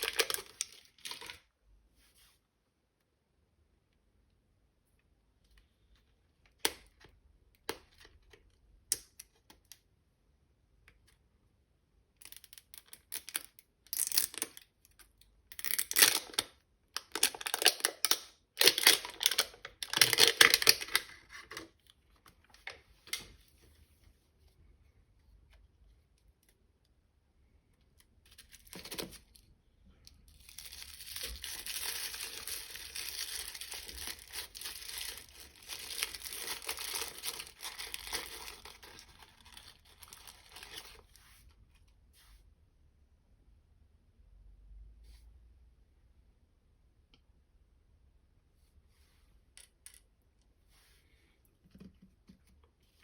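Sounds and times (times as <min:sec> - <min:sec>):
packaging crinkling: 0:00.0 - 0:01.4, 0:17.0 - 0:21.7, 0:30.3 - 0:41.2
packaging tearing and rustling: 0:00.0 - 0:01.4, 0:17.1 - 0:21.6, 0:30.4 - 0:41.2.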